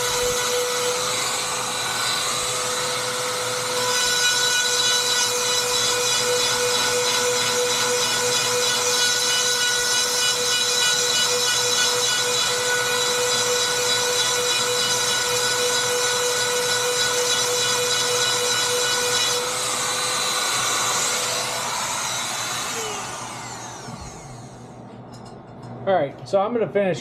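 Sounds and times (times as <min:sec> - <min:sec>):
motor spinning down: 0:21.4 - 0:24.7.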